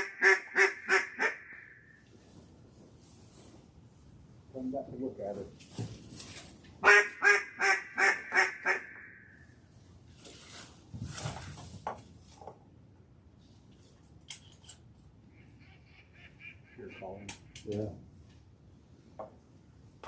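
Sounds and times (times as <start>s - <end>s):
duck call quacking notes: 0.0s - 1.8s, 6.8s - 9.3s.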